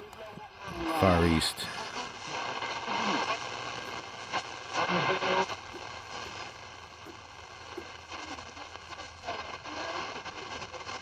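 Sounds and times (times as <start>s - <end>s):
faint distant radio station: 0.0s - 2.1s
shortwave radio static: 0.0s - 2.2s.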